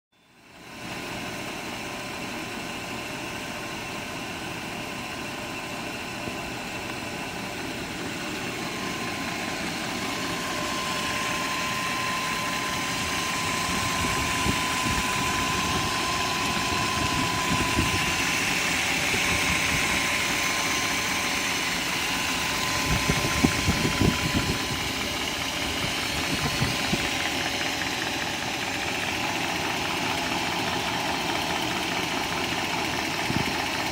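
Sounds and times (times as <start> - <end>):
car engine idling: 0.3 - 33.9
engine rattle: 0.4 - 33.9.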